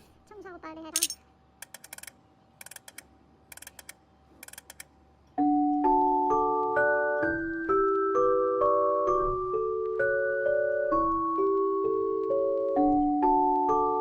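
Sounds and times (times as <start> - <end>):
sharp clicks: 1.6 - 4.9
bell-like mallet music: 5.4 - 14.0.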